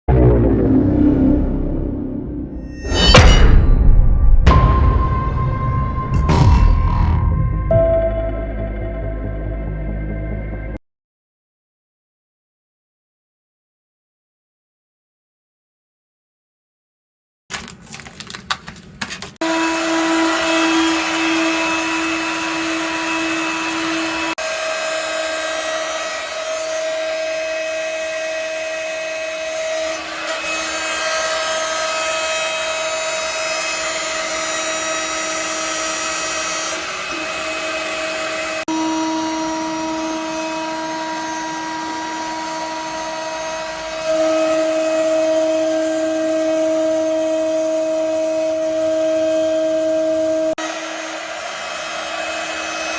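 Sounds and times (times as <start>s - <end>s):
milling spindle cutting whine: 19.0s - 52.9s.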